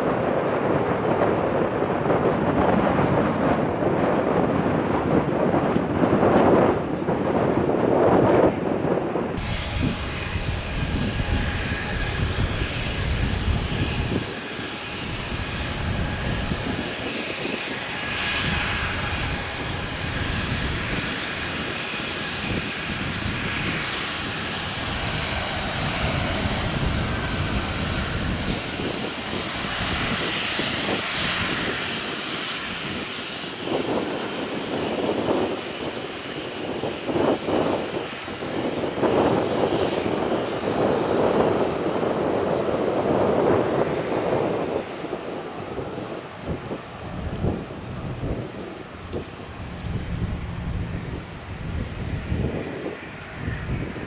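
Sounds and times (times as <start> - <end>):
airplane engines passing: 0.0 - 54.0.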